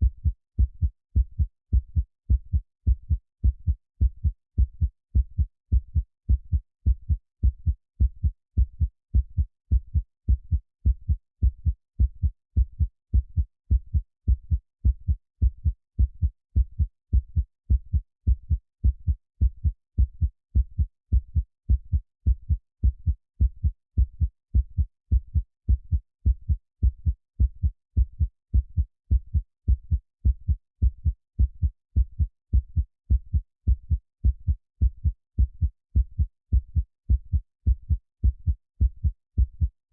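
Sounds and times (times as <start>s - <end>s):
heartbeat double thumps: 0.0s - 39.8s.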